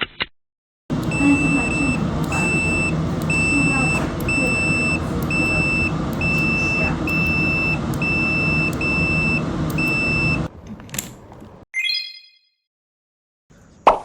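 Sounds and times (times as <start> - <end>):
car warning beeper: 0.9 - 10.5
low engine rumble: 0.9 - 11.6.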